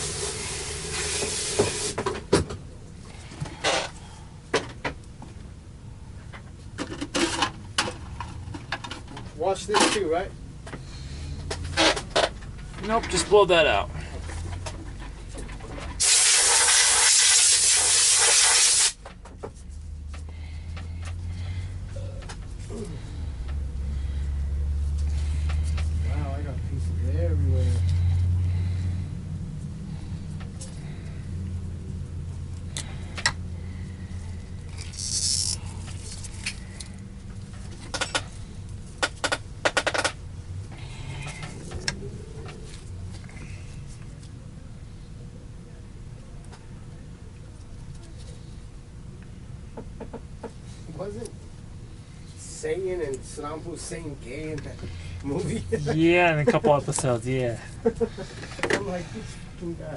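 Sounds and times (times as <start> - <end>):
compressed air hissing: 0.0 - 2.0, 16.0 - 19.0
steady low hum: 0.0 - 16.6, 19.0 - 59.9.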